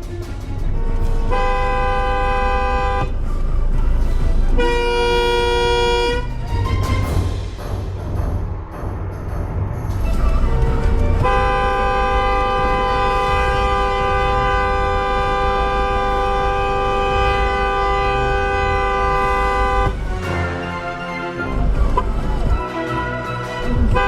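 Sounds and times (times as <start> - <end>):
idling traffic rumble: 0.0 - 24.0
car horn two-note blast: 1.2 - 3.2, 4.6 - 6.3, 10.6 - 22.4.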